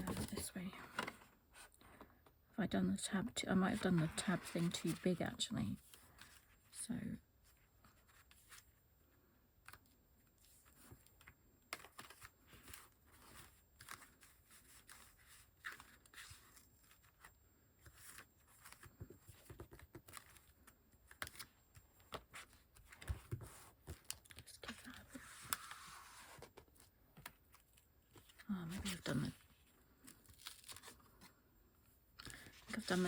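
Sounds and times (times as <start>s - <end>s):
paper and card rustling: 0.0s - 1.7s, 3.6s - 6.6s, 10.4s - 31.3s, 32.2s - 33.0s.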